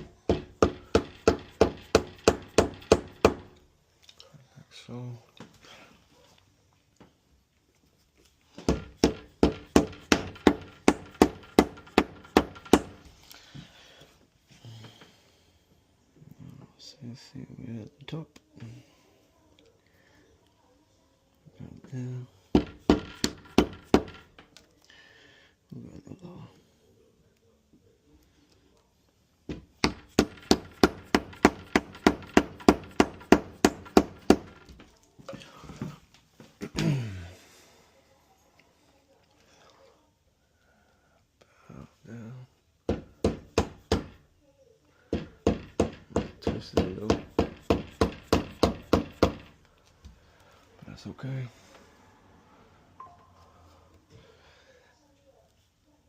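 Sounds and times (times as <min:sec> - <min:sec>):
wood chisel being struck: 0:00.0 - 0:03.6, 0:08.6 - 0:13.1, 0:22.5 - 0:24.3, 0:29.5 - 0:34.8, 0:42.9 - 0:44.2, 0:45.1 - 0:49.5.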